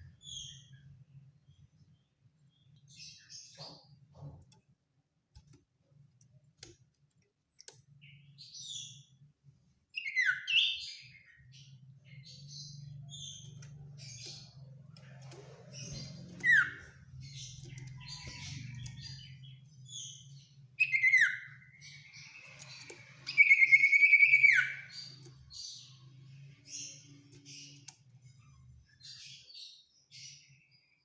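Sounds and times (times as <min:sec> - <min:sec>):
bird singing: 0:09.9 - 0:31.0.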